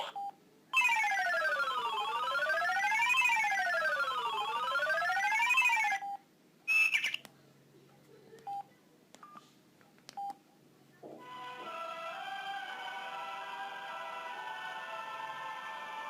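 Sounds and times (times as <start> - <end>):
phone ringtone sweeping tone: 0.8 - 6.1.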